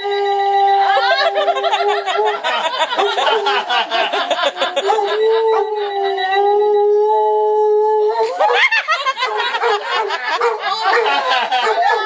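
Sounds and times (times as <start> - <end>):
dog howling: 4.5 - 12.0.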